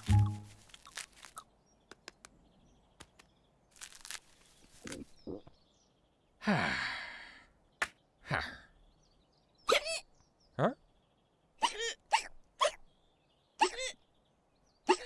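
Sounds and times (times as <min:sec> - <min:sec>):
long breathy sigh: 0:06.4 - 0:07.5.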